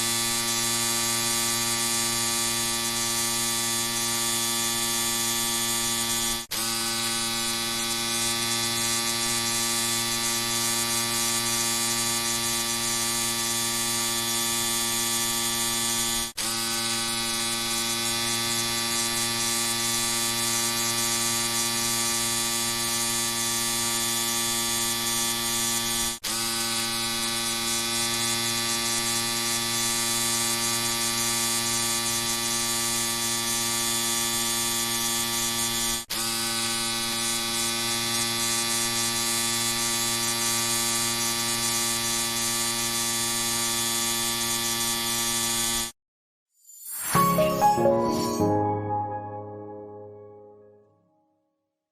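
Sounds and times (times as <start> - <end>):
electric shaver buzzing: 0.0 - 33.4, 34.2 - 45.9.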